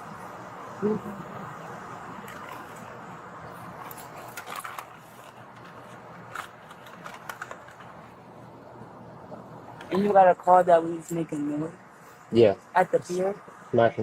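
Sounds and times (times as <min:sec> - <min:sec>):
low background hum: 0:00.0 - 0:14.0
papers rustling: 0:03.5 - 0:08.3.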